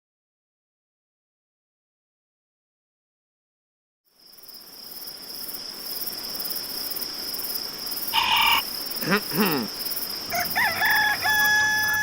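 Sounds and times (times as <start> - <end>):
crickets chirping: 4.1 - 12.0.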